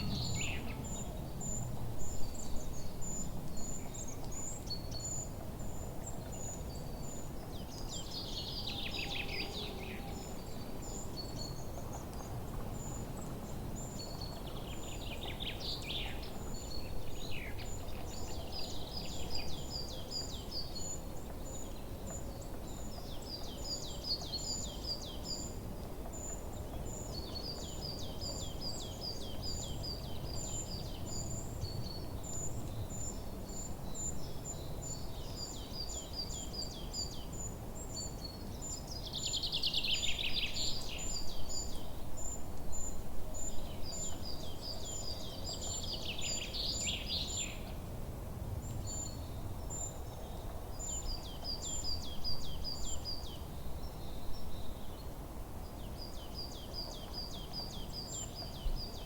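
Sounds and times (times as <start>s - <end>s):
birds chirping: 0.0s - 1.5s
low background rumble: 0.0s - 2.0s.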